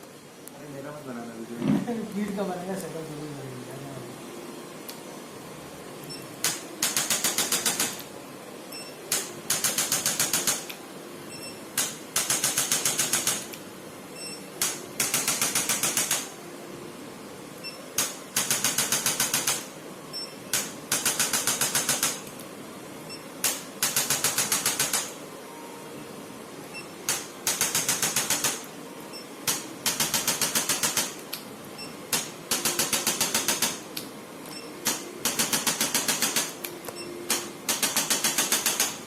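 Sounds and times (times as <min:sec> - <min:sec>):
adjusting instrument rapid clicks: 0:06.4 - 0:08.0, 0:09.1 - 0:10.8, 0:11.8 - 0:13.6, 0:14.6 - 0:16.2, 0:18.0 - 0:19.6, 0:20.5 - 0:22.3, 0:27.1 - 0:28.6, 0:29.5 - 0:31.4, 0:32.1 - 0:34.1, 0:34.8 - 0:36.6, 0:37.3 - 0:39.0.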